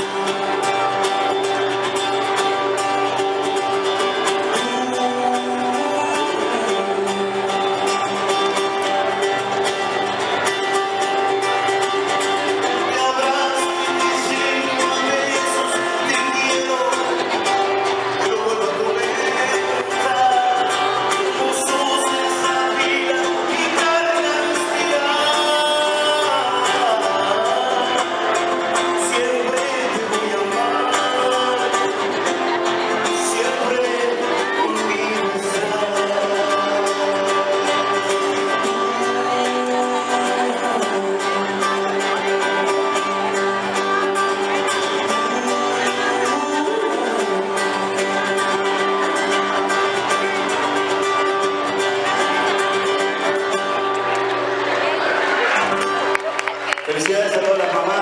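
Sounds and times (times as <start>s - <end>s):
person singing: 0.0s - 54.2s
live band instrumental music: 0.0s - 58.0s.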